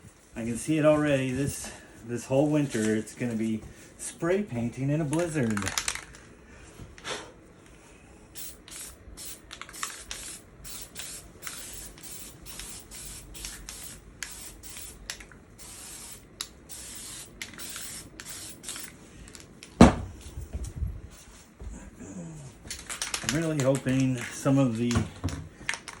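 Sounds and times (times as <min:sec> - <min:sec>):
spray can hissing: 0:08.4 - 0:19.0.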